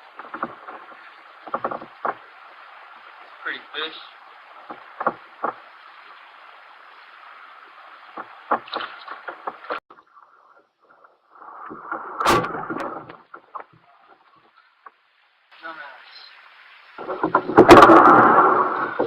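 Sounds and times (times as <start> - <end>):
thump and rustle: 0.0 - 2.3, 4.6 - 5.6, 8.1 - 9.8, 11.6 - 14.2, 17.0 - 19.0
knocks and clicks in kayak: 0.0 - 2.4, 4.5 - 5.8, 8.0 - 9.8, 11.6 - 15.0, 17.0 - 19.0
steady hiss: 0.0 - 9.8, 11.0 - 19.0.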